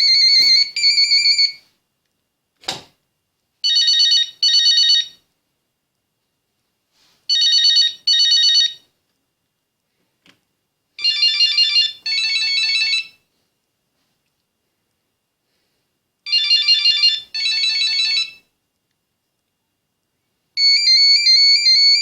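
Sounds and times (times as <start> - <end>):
phone ringtone beeping: 0.0 - 1.6, 3.6 - 5.2, 7.3 - 8.8, 11.0 - 13.2, 16.3 - 18.4, 20.6 - 22.0.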